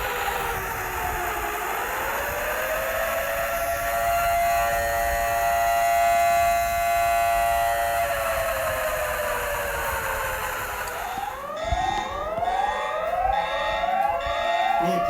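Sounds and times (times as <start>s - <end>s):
warning siren wailing: 0.0s - 15.0s.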